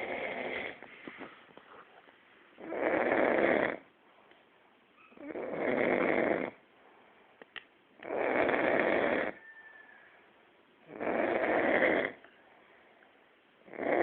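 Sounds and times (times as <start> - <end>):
person snoring: 0.0 - 0.8, 5.2 - 6.6, 8.0 - 9.4, 10.9 - 12.2, 13.7 - 14.0.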